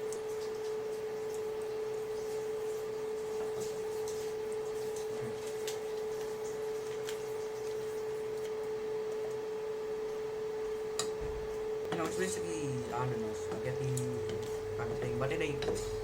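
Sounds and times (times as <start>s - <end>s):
steady humming tone: 0.0s - 16.0s.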